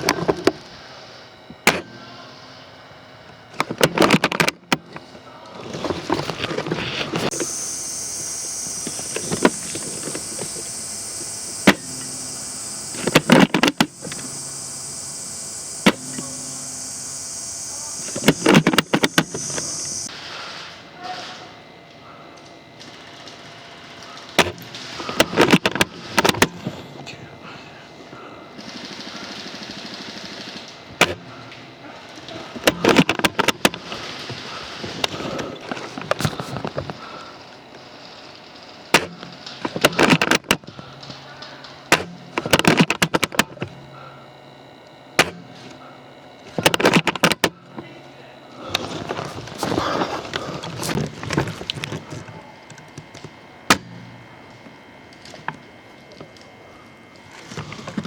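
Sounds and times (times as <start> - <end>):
steady high-pitched hiss: 7.0 - 21.8.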